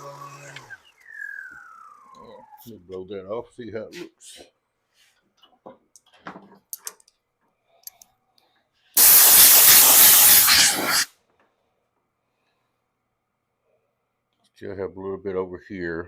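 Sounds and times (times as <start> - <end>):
compressed air blast: 9.0 - 11.1.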